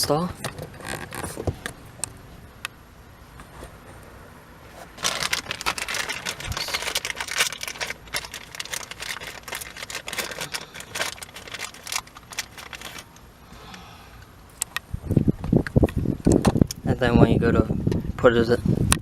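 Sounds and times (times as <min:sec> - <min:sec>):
plastic clicks and crackles: 0:05.0 - 0:13.2.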